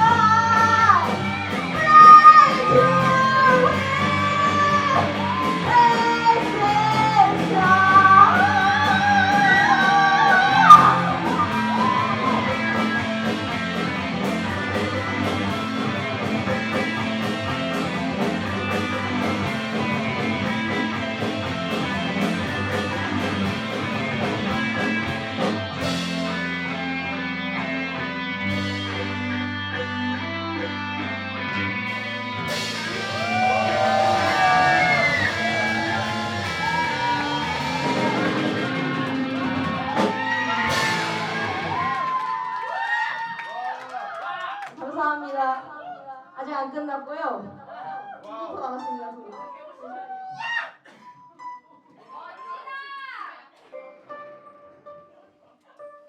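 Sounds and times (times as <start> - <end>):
electric guitar lead line: 0.0 - 42.2
live rock band playing: 0.0 - 42.4.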